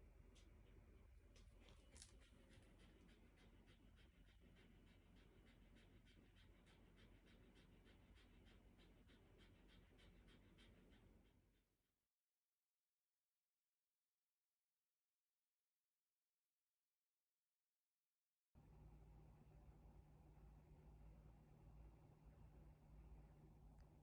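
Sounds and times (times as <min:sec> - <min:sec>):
dog panting: 0:00.1 - 0:11.6.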